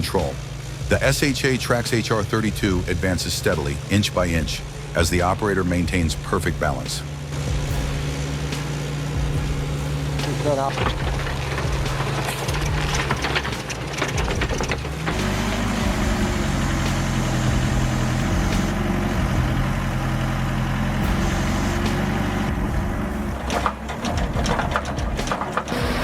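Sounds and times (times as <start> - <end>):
heavy machine engine running: 0.0 - 26.0
clattering knocks: 6.0 - 19.8, 21.0 - 26.0.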